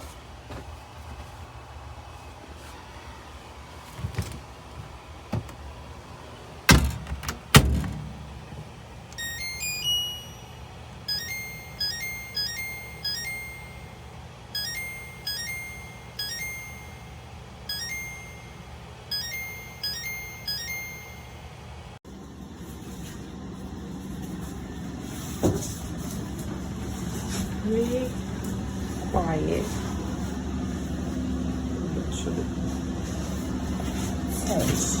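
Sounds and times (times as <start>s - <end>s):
clothes dryer humming: 0.0s - 35.0s
electronic beeping tune: 9.2s - 14.0s, 14.6s - 21.5s.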